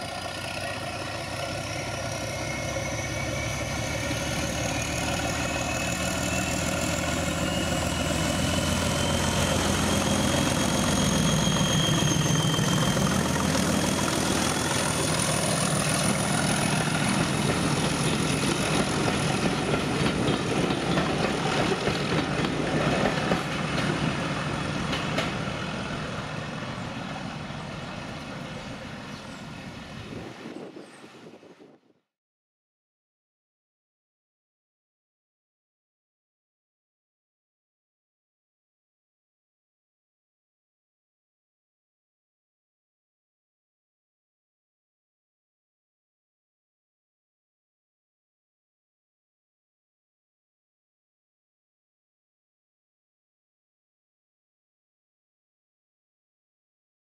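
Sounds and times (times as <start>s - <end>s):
diesel locomotive engine running: 0.0s - 30.7s
faint high whistle: 7.4s - 13.2s.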